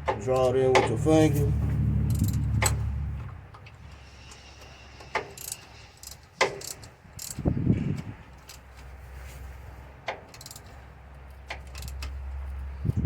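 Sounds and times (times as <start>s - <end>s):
low rumble: 0.7s - 3.6s
metallic clicks of hand tools: 2.1s - 2.8s, 5.1s - 8.9s, 10.1s - 10.7s, 11.4s - 12.6s.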